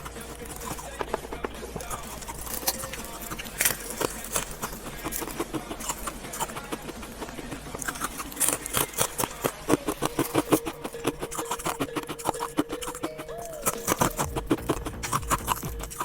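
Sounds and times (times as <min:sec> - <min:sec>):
jelly wet crackles and clicks: 0:00.0 - 0:16.0.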